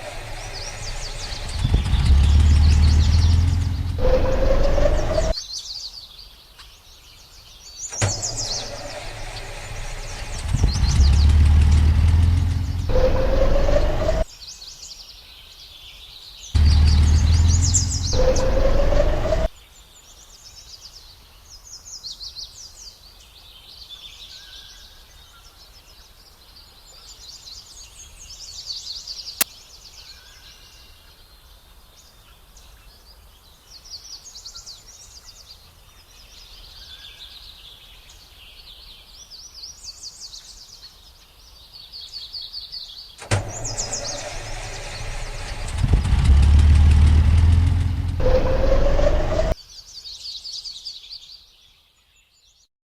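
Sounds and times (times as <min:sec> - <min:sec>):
loud rumbling motor noise: 0:00.0 - 0:05.4, 0:08.0 - 0:14.3, 0:16.6 - 0:19.5, 0:43.2 - 0:49.6
birds chirping and trilling: 0:00.0 - 0:52.6.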